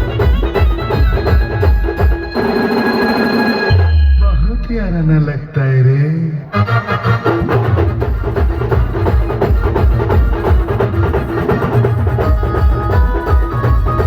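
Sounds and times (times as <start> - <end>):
fast dense drumming: 7.4 - 14.0.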